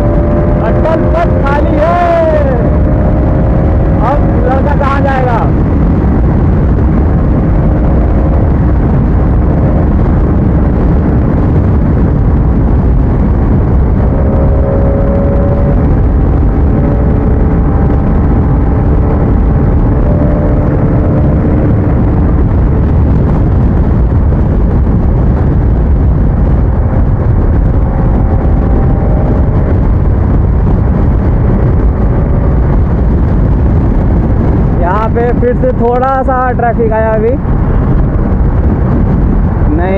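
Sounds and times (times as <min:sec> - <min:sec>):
faint motorcycle engine: 0:00.0 - 0:36.2
wind rush on microphone: 0:00.0 - 0:39.9.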